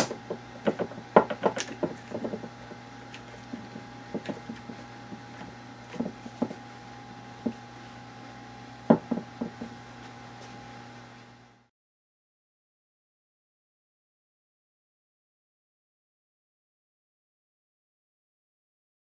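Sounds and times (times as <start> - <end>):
wooden blocks knocking: 0.0 - 6.6, 7.4 - 7.6, 8.9 - 9.8
electrical hum: 0.0 - 11.7.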